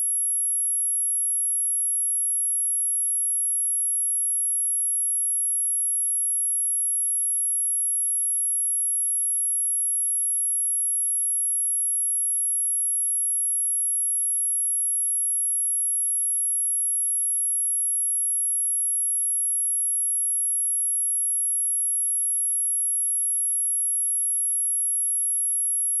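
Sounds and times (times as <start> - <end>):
high-pitched sine test tone: 11.9 - 26.0.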